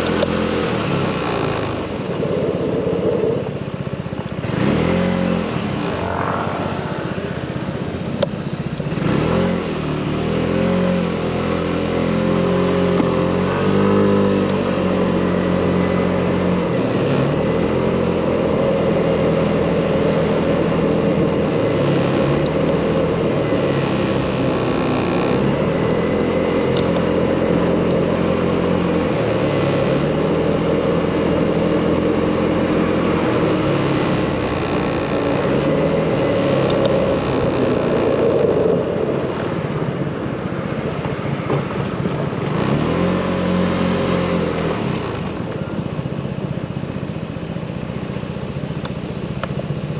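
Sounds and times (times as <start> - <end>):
motorcycle engine shifting gears: 0.0 - 49.9
wind and road noise: 0.0 - 49.9.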